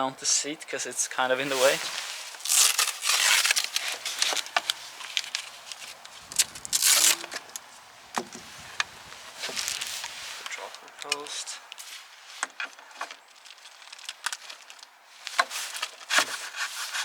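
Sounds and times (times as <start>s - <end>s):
packaging crinkling and rustling: 1.6s - 7.7s, 8.3s - 12.0s, 13.0s - 16.2s.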